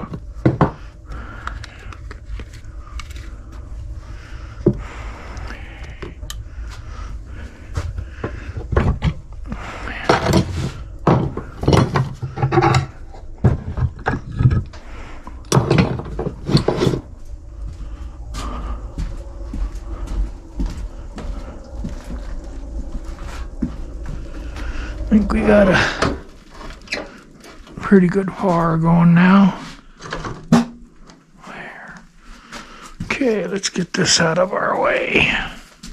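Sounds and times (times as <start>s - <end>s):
scraping rattles: 0.0s - 20.1s.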